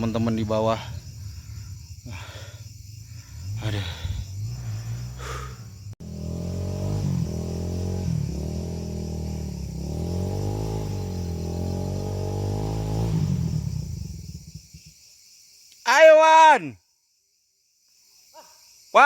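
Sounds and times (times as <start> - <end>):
dirt bike engine revving: 3.2 - 14.9.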